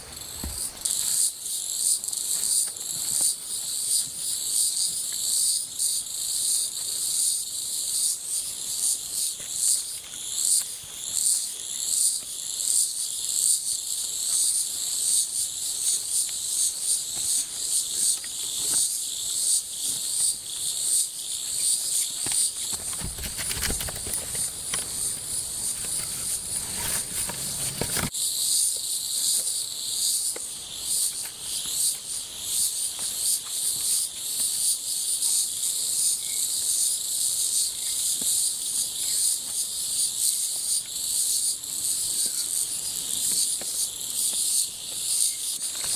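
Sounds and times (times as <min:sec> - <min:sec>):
insects chirring: 0:00.0 - 0:45.9
rustling knocking noise: 0:22.3 - 0:28.1.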